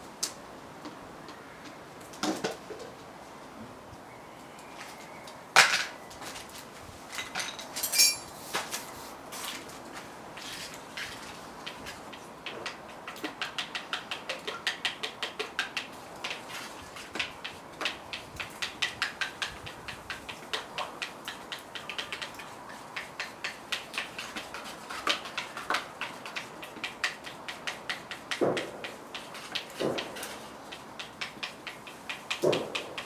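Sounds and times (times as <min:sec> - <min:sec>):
light metallic clicks and clinks: 0:07.1 - 0:08.4.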